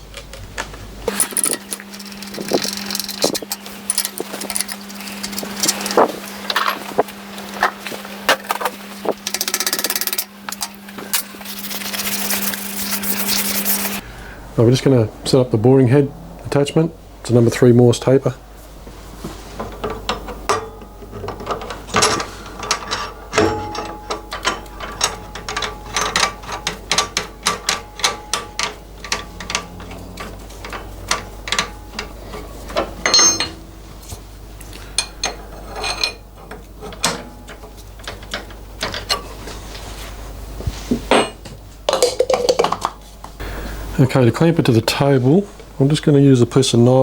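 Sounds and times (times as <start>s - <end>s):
metallic clicks and knocks: 0.1s - 7.7s, 19.6s - 39.4s
ratchet clicking: 1.1s - 6.8s, 9.2s - 14.0s.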